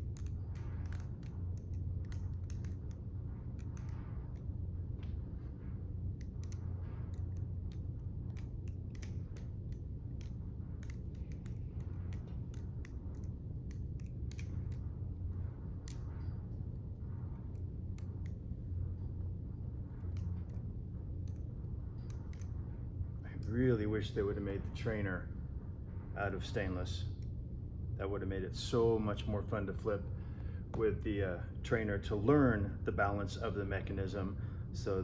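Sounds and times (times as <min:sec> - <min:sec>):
butterfly knife clicking and clacking: 0:00.0 - 0:04.5, 0:06.2 - 0:14.9
steady low hum: 0:00.0 - 0:35.0.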